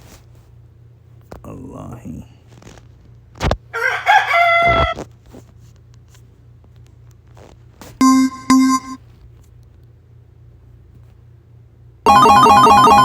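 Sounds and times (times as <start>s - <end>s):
rooster crowing: 3.7s - 5.0s
short electronic tones: 8.0s - 9.0s, 12.1s - 13.0s.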